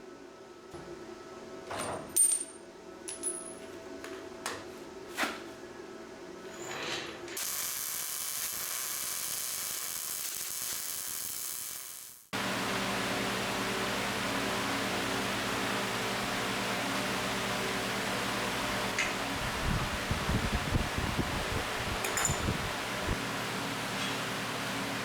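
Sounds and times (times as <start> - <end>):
steady high hiss: 7.4 - 12.3
metal tools clinking: 22.0 - 22.5.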